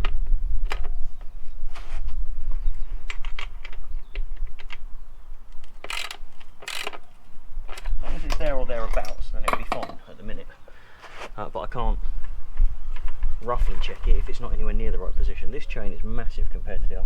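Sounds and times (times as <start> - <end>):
metallic clicks of chain and tools: 5.8 - 7.0.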